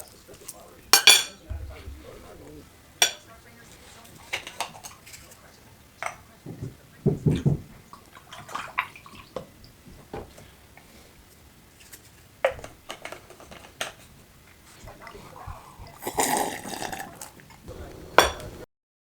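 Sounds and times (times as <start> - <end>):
dishes and utensils clinking: 0.0 - 2.2, 3.0 - 10.6, 11.8 - 18.6
dull thumps: 1.4 - 2.6.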